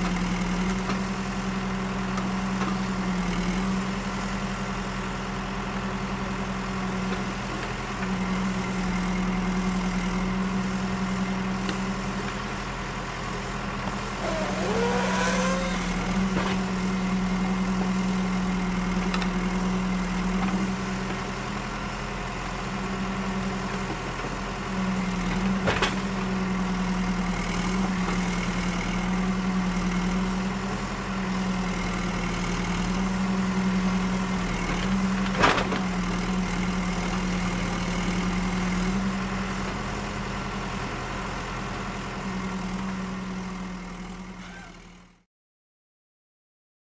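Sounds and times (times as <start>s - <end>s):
construction machinery engine droning: 0.0s - 45.2s
wavering squeal: 14.2s - 16.8s.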